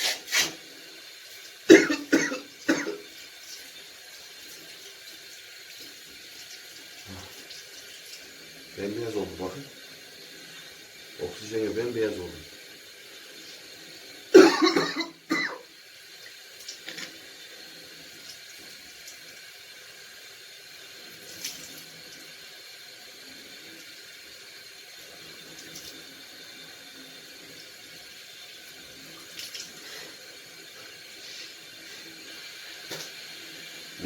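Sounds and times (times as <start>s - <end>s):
water running from tap into sink: 0.0s - 34.0s.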